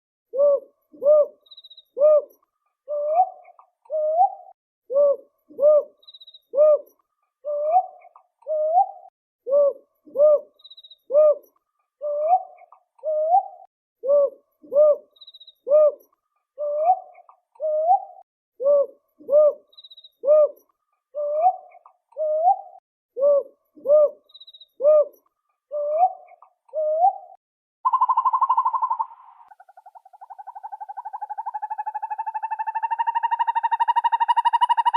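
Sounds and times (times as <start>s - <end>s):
owl hooting: 0.3s - 16.0s, 16.6s - 20.6s, 21.2s - 34.9s
loud wavering call: 27.9s - 29.6s.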